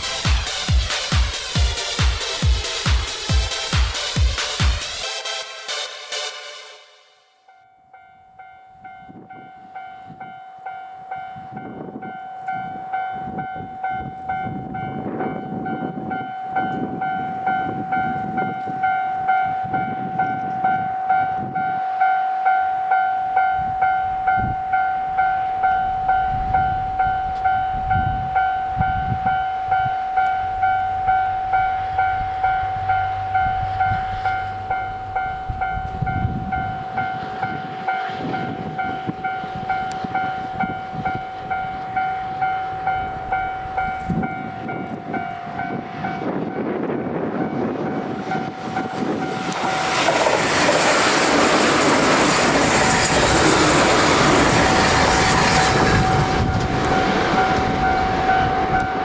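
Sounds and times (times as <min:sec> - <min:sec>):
level-crossing warning bell: 0:00.0 - 0:59.0
low rumbling: 0:23.6 - 0:36.9.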